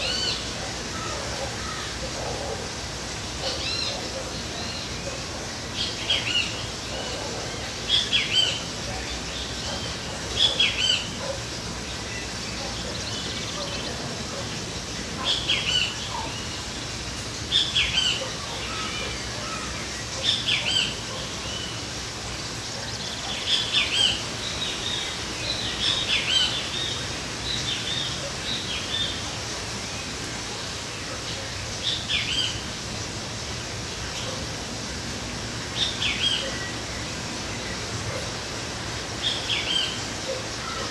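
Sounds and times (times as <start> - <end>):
birds chirping: 0.0 - 34.9.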